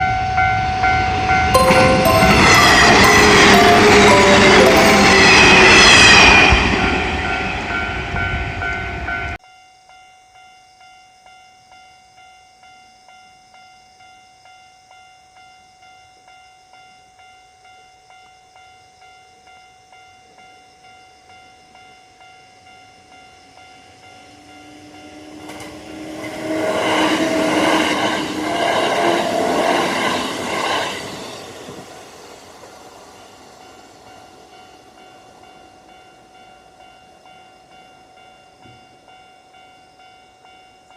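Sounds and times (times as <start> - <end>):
train passing loudly: 0.0 - 9.4, 22.6 - 39.2
railroad crossing electronic bell: 0.0 - 40.9.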